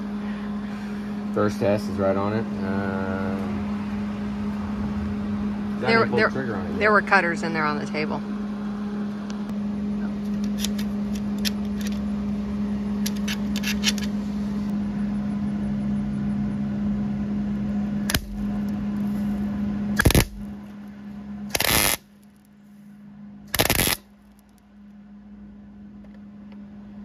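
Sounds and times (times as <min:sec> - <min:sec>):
electrical hum: 0:00.0 - 0:27.0
welder crackling bursts: 0:20.0 - 0:20.4, 0:21.5 - 0:22.1, 0:23.5 - 0:24.0.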